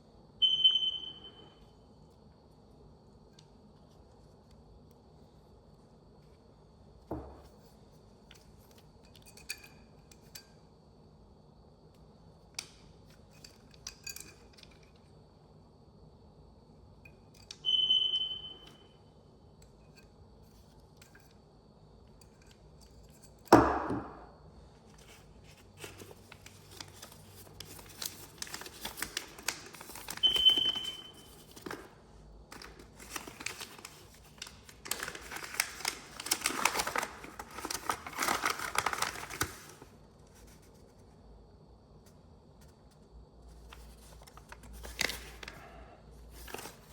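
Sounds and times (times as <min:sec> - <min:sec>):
short high-pitched electronic beeps: 0:00.4 - 0:01.3, 0:17.7 - 0:18.8
crinkling and rattling: 0:31.4 - 0:39.7.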